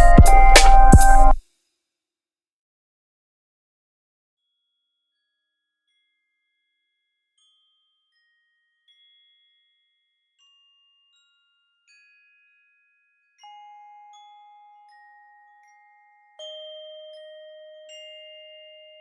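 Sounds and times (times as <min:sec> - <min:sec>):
slow chime-like mallet notes: 0:00.0 - 0:01.4, 0:13.4 - 0:19.0.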